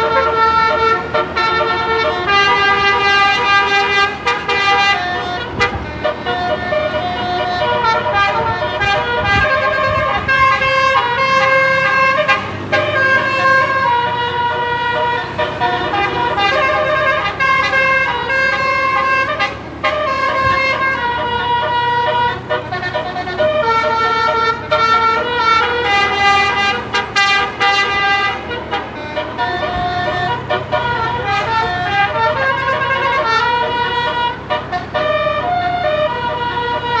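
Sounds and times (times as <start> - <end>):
musical air horn playing tune: 0.0 - 37.0.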